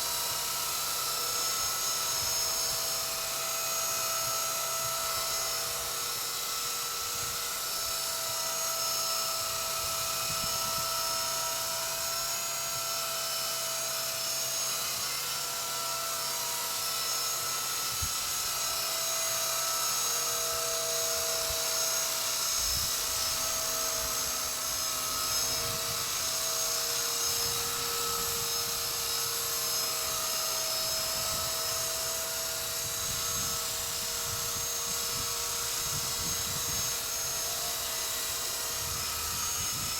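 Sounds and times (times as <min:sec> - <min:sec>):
helicopter rotor whine: 0:00.0 - 0:39.9
wind rumbling on microphone: 0:09.4 - 0:11.0, 0:22.6 - 0:26.5, 0:27.3 - 0:28.9, 0:30.8 - 0:39.9.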